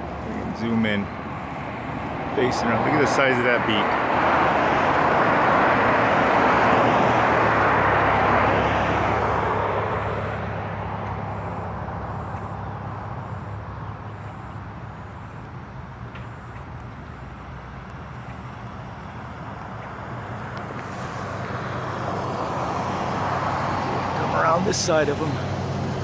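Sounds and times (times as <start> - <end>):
vehicle driving past: 0.0 - 13.3, 19.6 - 26.0.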